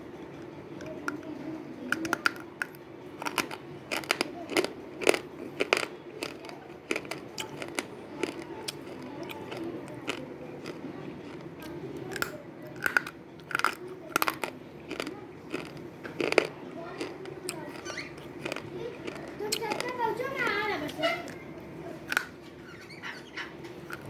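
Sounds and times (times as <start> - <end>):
slate pencil being chewed: 2.0 - 20.0.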